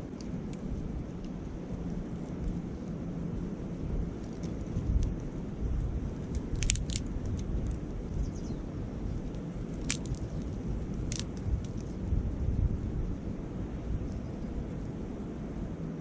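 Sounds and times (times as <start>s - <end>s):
campfire crackling: 0.0s - 8.1s, 8.9s - 12.0s
wind rumble on microphone: 0.0s - 16.0s
wood snapping in fire: 6.2s - 7.8s, 9.7s - 11.8s.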